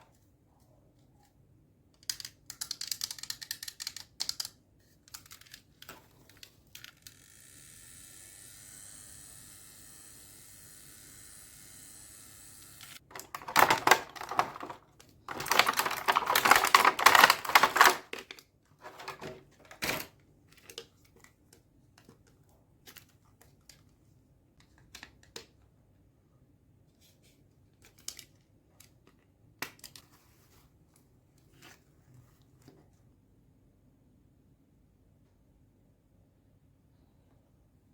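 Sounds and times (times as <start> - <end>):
small plastic pieces clicking: 2.0 - 7.2, 12.8 - 18.4
plastic packaging rustling and tearing: 13.1 - 20.0.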